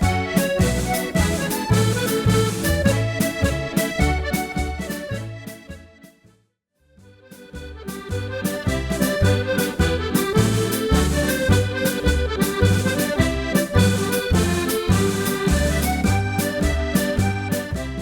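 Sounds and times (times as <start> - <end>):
accordion playing a jig: 0.0 - 6.4, 7.0 - 18.0.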